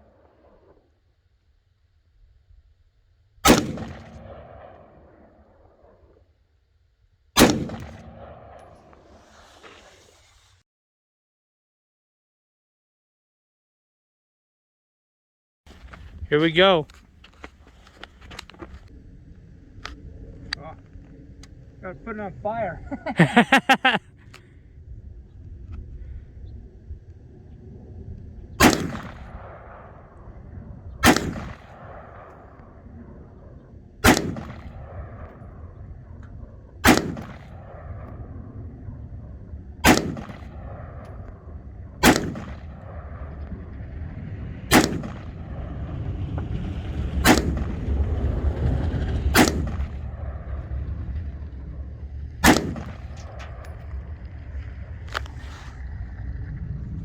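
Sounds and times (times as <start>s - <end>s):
single gunshots with ringing: 3.4s - 5.9s, 7.4s - 8.9s, 28.6s - 30.2s, 31.0s - 32.5s, 34.0s - 35.8s, 36.8s - 38.1s, 39.8s - 41.0s, 42.0s - 43.3s, 44.7s - 45.4s, 47.2s - 47.8s, 49.4s - 50.1s, 52.4s - 53.6s.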